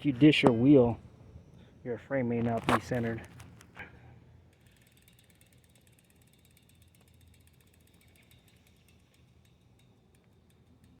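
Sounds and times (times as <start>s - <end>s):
bicycle freewheel ticking: 4.4s - 11.0s.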